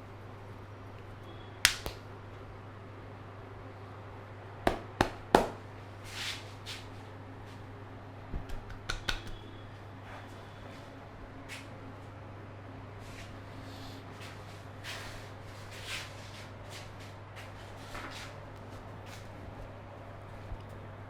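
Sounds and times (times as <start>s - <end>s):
hand strikes on head: 4.7s - 5.6s.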